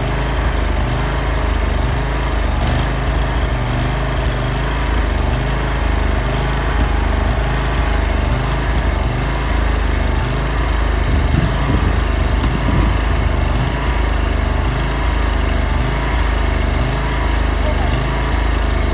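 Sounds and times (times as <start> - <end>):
stump grinder engine running: 0.0 - 18.9.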